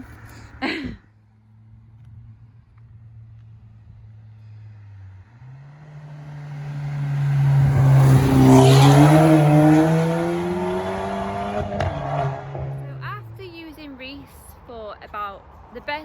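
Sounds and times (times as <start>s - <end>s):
car accelerating past: 1.4s - 13.3s.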